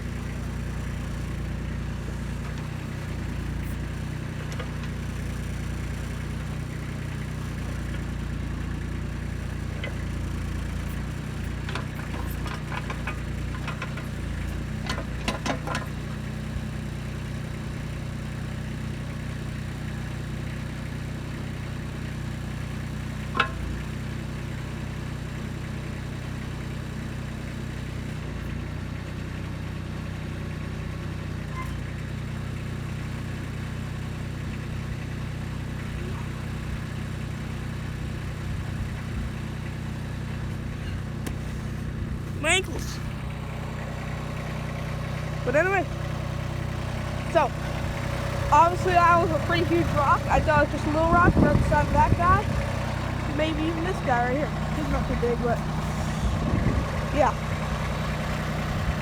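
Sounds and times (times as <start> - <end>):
tractor diesel engine running: 0.0 - 59.0
clanks and rattles: 2.2 - 5.5, 9.6 - 16.3, 23.2 - 24.0.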